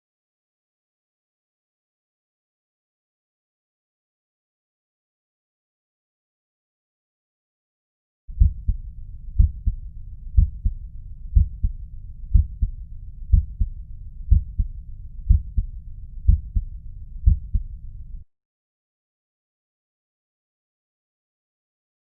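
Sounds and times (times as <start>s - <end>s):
heartbeat lub-dub: 8.3s - 9.8s, 10.4s - 15.7s, 16.3s - 17.7s
steady low rumble: 8.3s - 18.3s.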